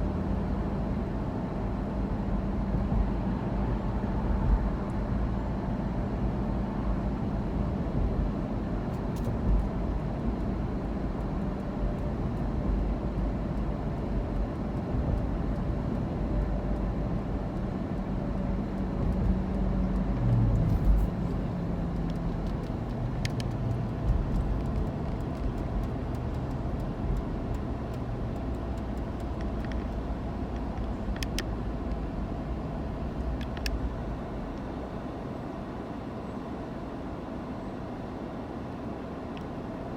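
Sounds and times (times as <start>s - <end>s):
vehicle engine and road rumble: 0.0s - 39.9s.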